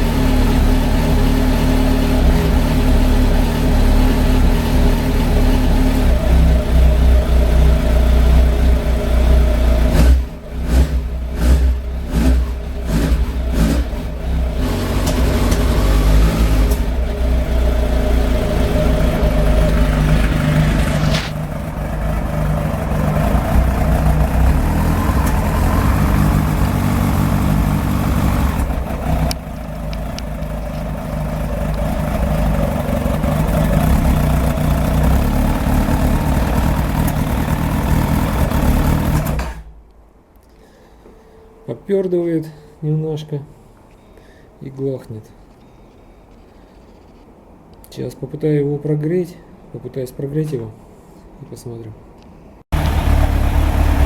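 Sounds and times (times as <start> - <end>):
motorcycle engine running unevenly: 0.0 - 39.6, 52.7 - 54.0
engine backfire popping: 8.2 - 39.8, 52.7 - 54.0.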